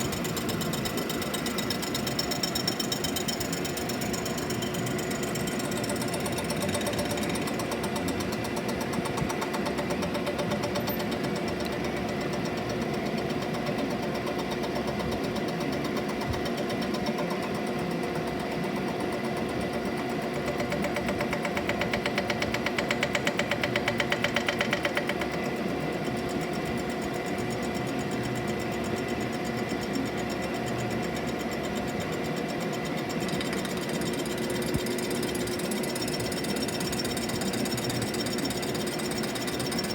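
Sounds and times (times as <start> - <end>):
machine tool whine: 0.0 - 39.9
cutter rattling: 30.4 - 39.9.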